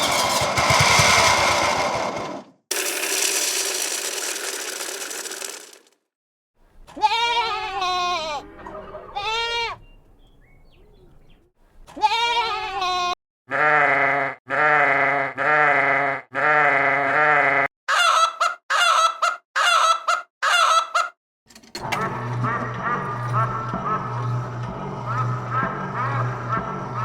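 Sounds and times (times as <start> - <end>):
bleat-like farm animal calls: 7.0 - 9.8, 11.9 - 20.9.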